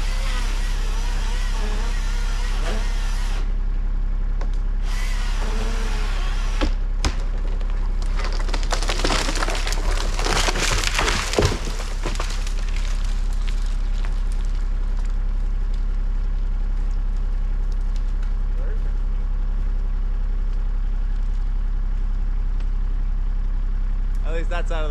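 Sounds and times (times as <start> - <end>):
steady low hum: 0.0 - 24.9
tree trunk cracking and splintering: 4.4 - 23.6.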